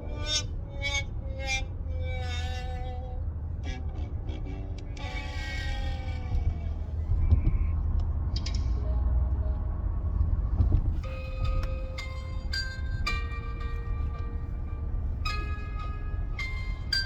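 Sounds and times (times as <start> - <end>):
low rumble: 6.8 - 17.0
steady held electronic tone: 11.0 - 17.0.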